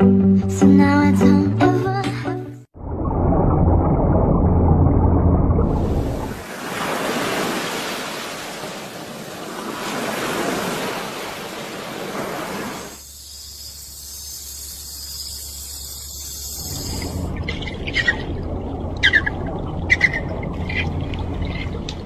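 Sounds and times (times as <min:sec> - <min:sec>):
low hum: 0:02.6 - 0:06.4, 0:13.0 - 0:22.0
waves washing ashore: 0:05.7 - 0:13.0.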